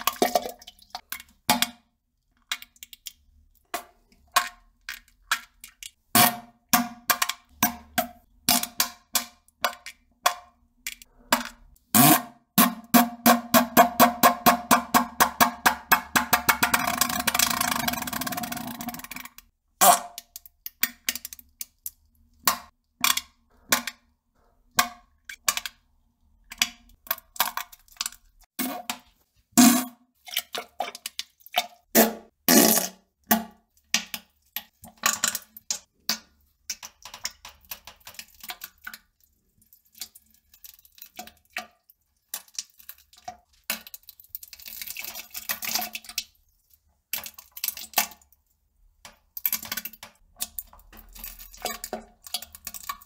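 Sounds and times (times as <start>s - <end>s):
wet spluttering farts: 32.0s - 33.0s.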